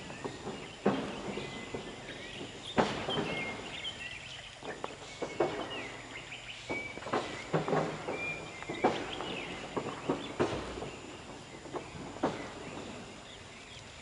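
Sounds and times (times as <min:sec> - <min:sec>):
small birds chirping: 0:00.0 - 0:14.0
sharp knocks: 0:00.2 - 0:03.8, 0:04.7 - 0:06.0, 0:06.7 - 0:11.0.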